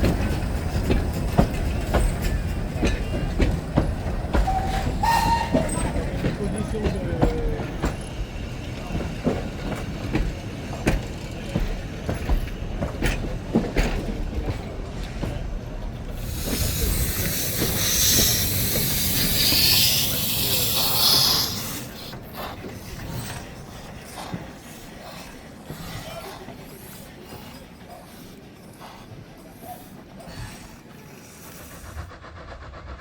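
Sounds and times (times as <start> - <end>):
loud hiss of steam: 16.1 - 22.6, 30.4 - 33.0.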